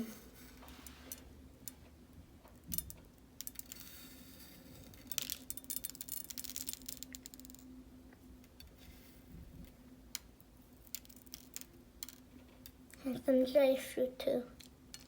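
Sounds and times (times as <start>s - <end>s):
sprinkles rattling in container: 4.8s - 7.7s, 10.8s - 12.2s.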